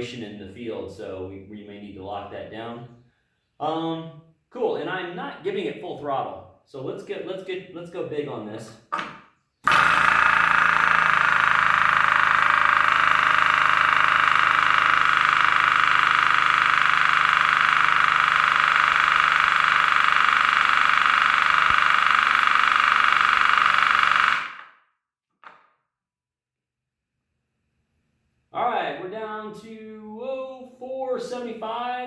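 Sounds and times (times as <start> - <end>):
pneumatic air hammer buzzing: 8.9 - 24.7.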